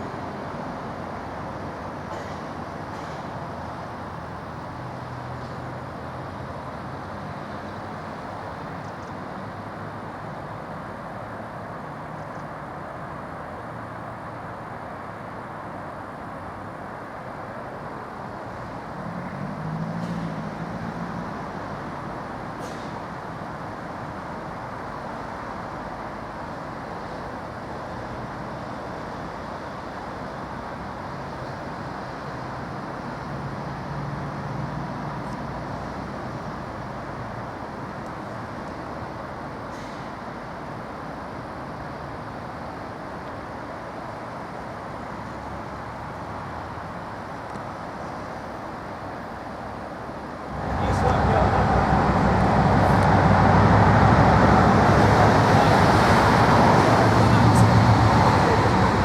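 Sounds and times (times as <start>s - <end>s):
distant vehicles rumbling: 17.9s - 59.0s.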